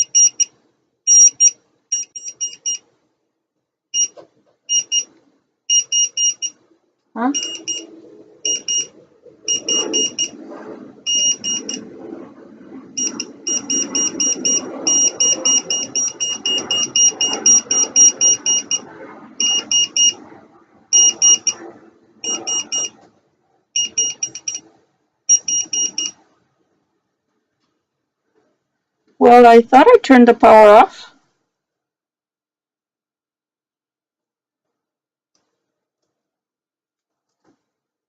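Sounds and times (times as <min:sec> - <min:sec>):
voltage tester rapid shrill beeps: 0:00.0 - 0:00.5, 0:01.1 - 0:02.8, 0:04.0 - 0:05.1, 0:05.7 - 0:06.6, 0:07.3 - 0:07.8, 0:08.4 - 0:08.9, 0:09.5 - 0:10.3, 0:11.1 - 0:11.8, 0:13.0 - 0:20.2, 0:20.9 - 0:21.6, 0:22.2 - 0:23.0, 0:23.8 - 0:24.6, 0:25.3 - 0:26.2.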